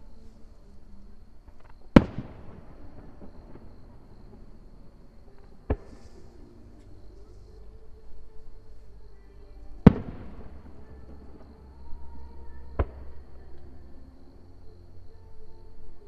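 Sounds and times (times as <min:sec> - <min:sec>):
firework bursts: 0:01.9 - 0:04.6.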